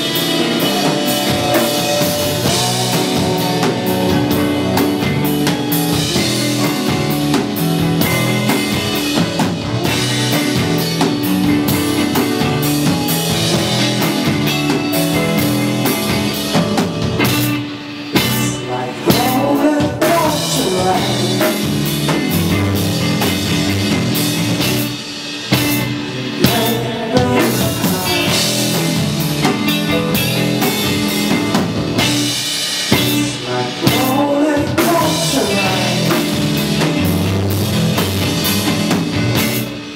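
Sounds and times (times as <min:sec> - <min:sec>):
person singing: 0:00.0 - 0:07.6, 0:18.2 - 0:21.9, 0:26.0 - 0:29.0, 0:33.0 - 0:36.7
live rock band playing: 0:00.0 - 0:39.9.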